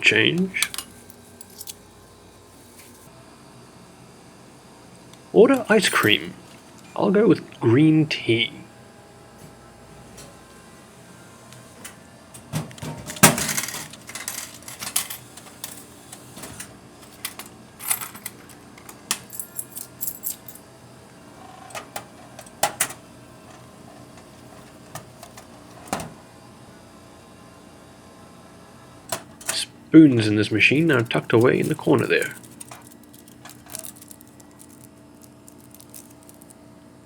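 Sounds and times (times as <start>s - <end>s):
coins clinking: 0.3s - 1.9s, 13.1s - 16.0s, 17.0s - 20.6s, 29.1s - 36.6s
vending machine clicks: 21.7s - 23.0s.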